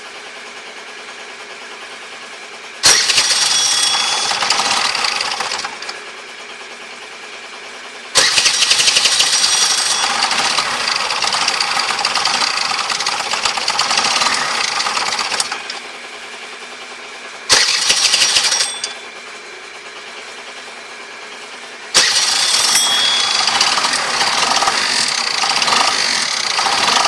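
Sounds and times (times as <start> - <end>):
scooter engine idling and revving: 0.0 - 27.0
harsh high-pitched engine noise: 2.8 - 27.0.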